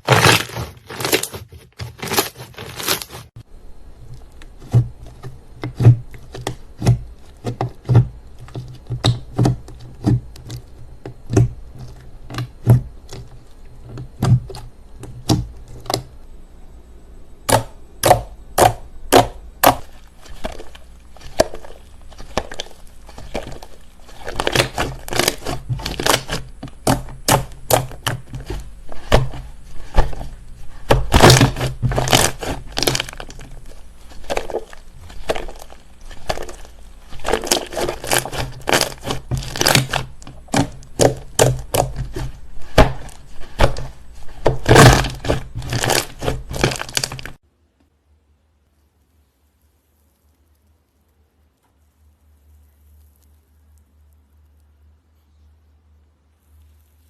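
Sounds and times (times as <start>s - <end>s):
slime crackling and popping: 0.0s - 1.4s, 17.5s - 47.4s.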